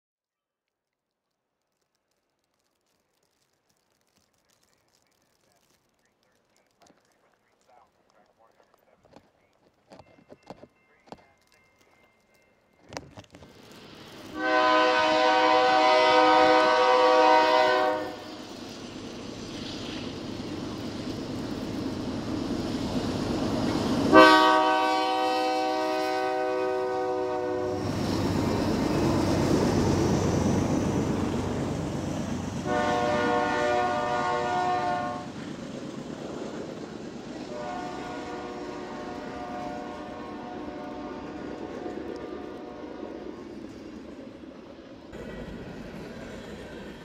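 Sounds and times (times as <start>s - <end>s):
locomotive engine rumble: 2.5s - 47.0s
locomotive air horn blasts: 14.3s - 18.3s, 24.1s - 27.9s, 32.6s - 35.3s, 37.5s - 43.2s.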